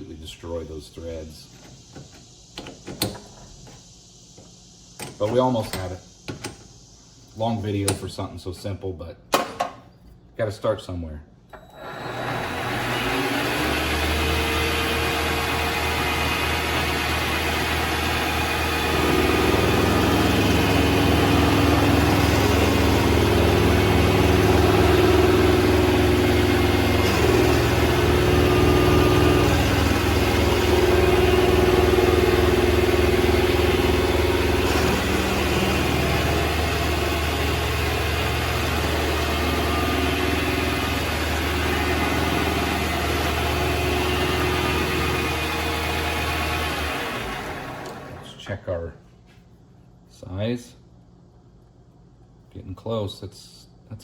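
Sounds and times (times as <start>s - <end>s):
lathe motor hum and whine: 11.6s - 48.3s.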